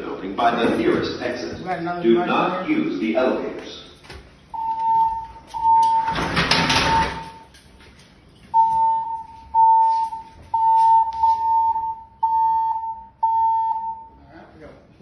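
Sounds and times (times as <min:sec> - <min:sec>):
pulsing alarm tone: 0:04.5 - 0:07.5, 0:08.6 - 0:14.2.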